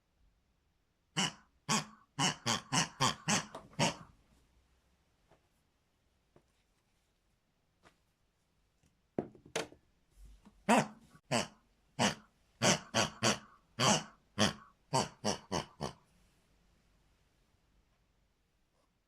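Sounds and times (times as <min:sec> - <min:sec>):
pig oinking and squealing: 0:01.2 - 0:04.1, 0:10.7 - 0:16.0.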